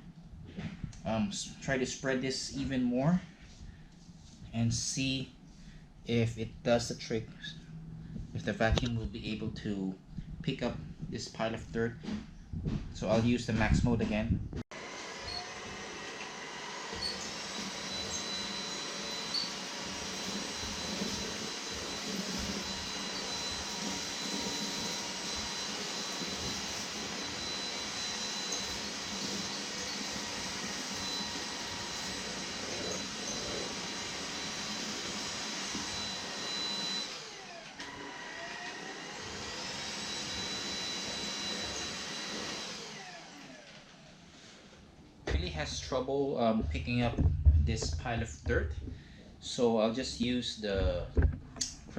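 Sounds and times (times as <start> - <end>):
vacuum cleaner motor whine: 14.7 - 44.4.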